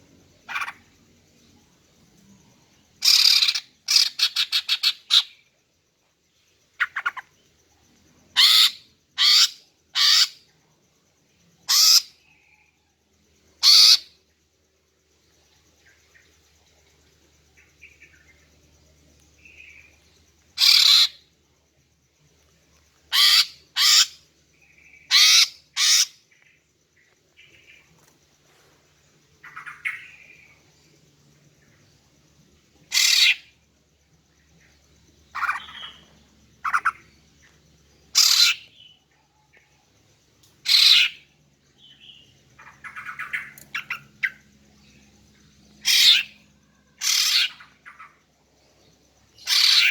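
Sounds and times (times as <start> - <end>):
bird giving harsh calls: 8.4 - 10.4, 13.6 - 14.1, 20.6 - 21.2, 23.1 - 24.2, 25.1 - 26.2, 32.9 - 33.4, 38.2 - 38.7, 40.7 - 41.2, 45.8 - 46.4, 47.0 - 47.7, 49.4 - 49.9.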